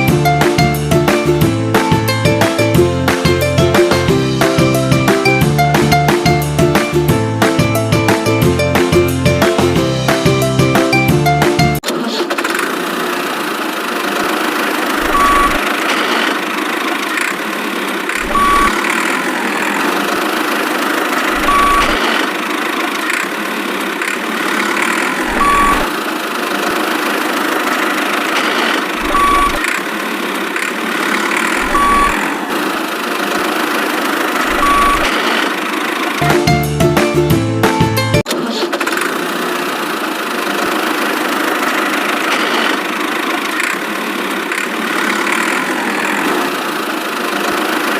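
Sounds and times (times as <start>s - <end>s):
engine-like running noise: 0.0s - 37.2s, 38.3s - 47.9s
short beep: 15.1s - 15.6s, 18.2s - 18.9s, 21.4s - 22.1s, 25.3s - 25.9s, 29.0s - 29.6s, 31.6s - 32.4s, 34.5s - 35.3s.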